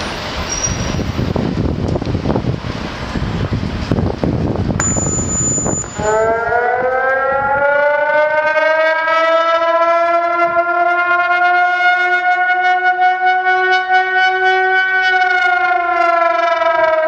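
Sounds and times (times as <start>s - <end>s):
warning siren wailing: 5.6s - 17.0s.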